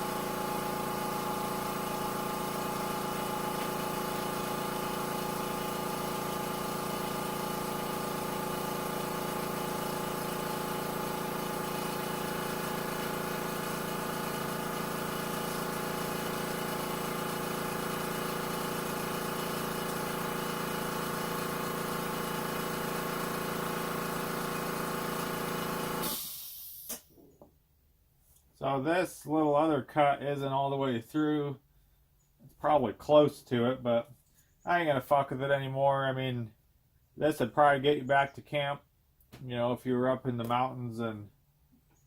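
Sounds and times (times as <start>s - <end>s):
air compressor running: 0.0s - 27.2s.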